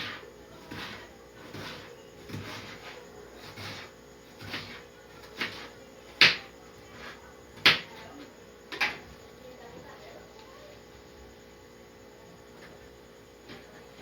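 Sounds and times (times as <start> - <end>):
knife cutting on cutting board: 0.0 - 7.9.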